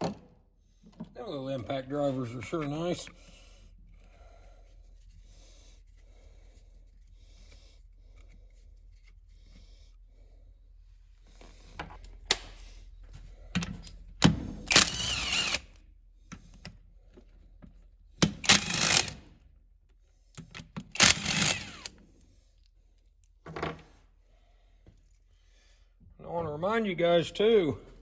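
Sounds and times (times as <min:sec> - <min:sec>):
impact driver hammering bolts: 0:14.2 - 0:15.6, 0:18.2 - 0:19.2, 0:20.6 - 0:21.9.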